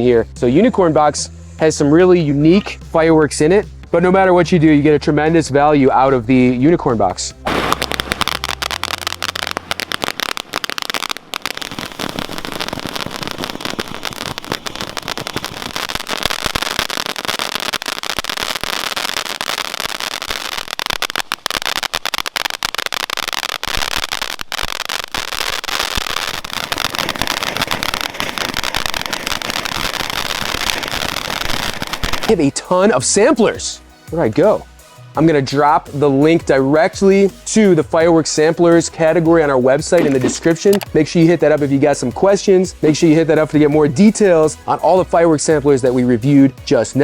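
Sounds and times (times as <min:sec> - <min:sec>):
firework fountains crackling: 0:07.4 - 0:34.6, 0:36.8 - 0:47.0.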